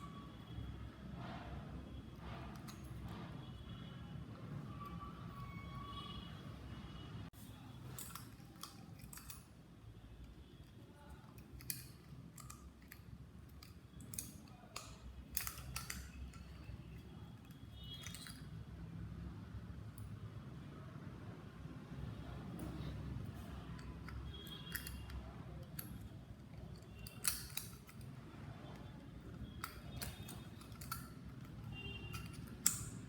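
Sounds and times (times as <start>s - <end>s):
screwdriver clicking and scraping plastic: 10.6s - 18.4s, 23.7s - 33.0s.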